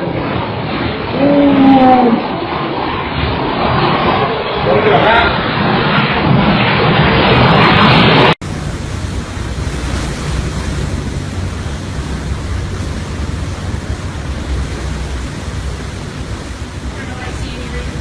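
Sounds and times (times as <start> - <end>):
muffled noisy burst: 0.0 - 18.0
roar of hurricane wind: 0.0 - 18.0.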